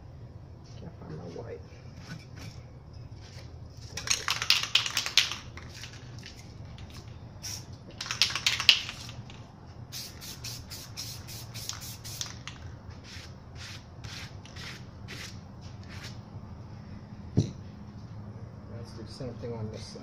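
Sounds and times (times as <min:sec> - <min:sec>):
spray paint can hissing bursts: 0:04.1 - 0:06.0, 0:07.4 - 0:16.2.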